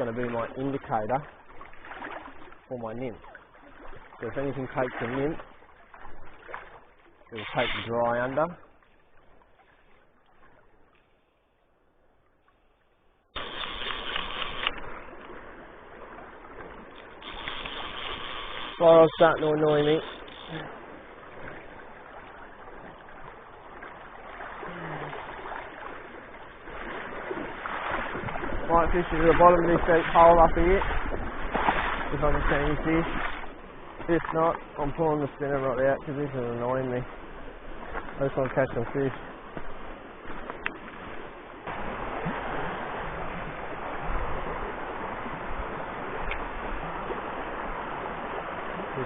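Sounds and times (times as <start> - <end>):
river water rushing: 13.3 - 49.0.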